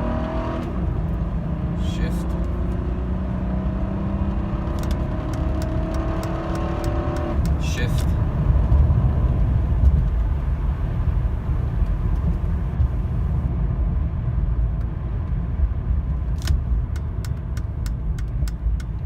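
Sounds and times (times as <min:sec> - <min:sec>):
car engine low rumble: 0:00.0 - 0:19.0
regular ticking: 0:16.9 - 0:19.0.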